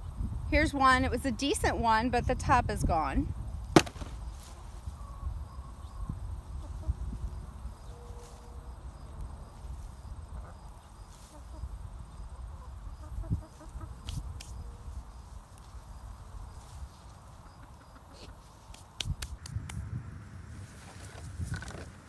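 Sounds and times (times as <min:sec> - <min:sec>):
chickens clucking: 0:10.4 - 0:14.1, 0:17.2 - 0:18.6.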